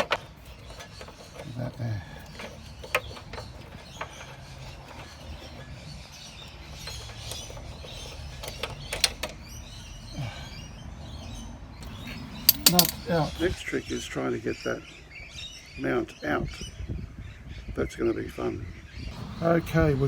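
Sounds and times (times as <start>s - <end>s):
socket spanner clicking: 12.5s - 13.0s.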